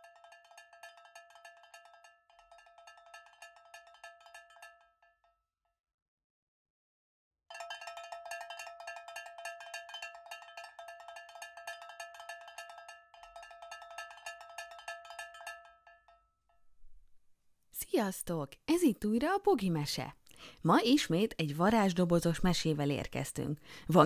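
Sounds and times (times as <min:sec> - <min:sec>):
small metal bell ringing: 0:00.0 - 0:05.3, 0:07.5 - 0:16.6.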